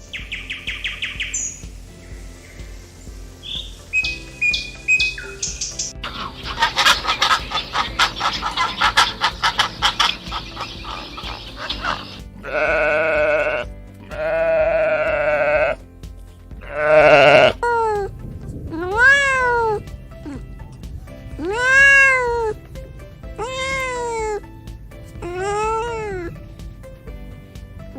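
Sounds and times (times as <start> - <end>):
bird chirping: 0.0 - 12.4
quavering bleats: 6.0 - 15.8, 16.6 - 17.7, 21.4 - 22.6, 23.4 - 24.4, 25.2 - 26.4
cat meowing: 18.8 - 19.8, 21.4 - 22.6, 23.4 - 24.4.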